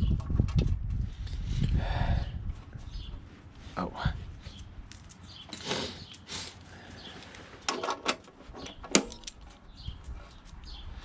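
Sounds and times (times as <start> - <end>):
wind rumbling on microphone: 0.0 - 4.9, 8.4 - 11.0
hand tools clicking and knocking: 7.6 - 9.6.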